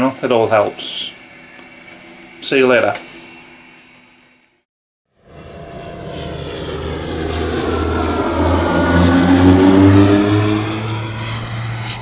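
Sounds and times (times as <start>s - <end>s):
propeller aircraft flying past: 5.1s - 12.0s.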